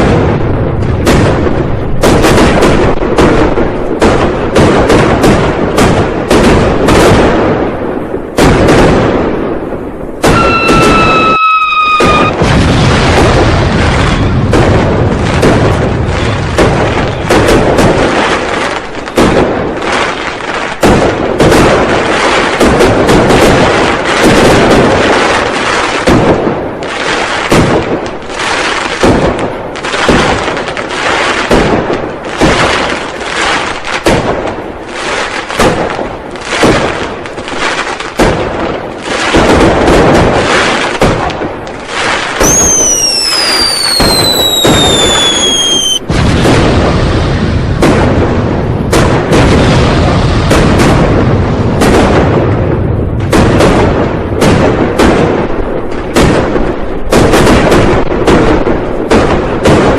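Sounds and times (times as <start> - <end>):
firecrackers and fireworks banging: 0.0 - 59.9
high firework whistle: 10.2 - 12.6, 42.4 - 46.1.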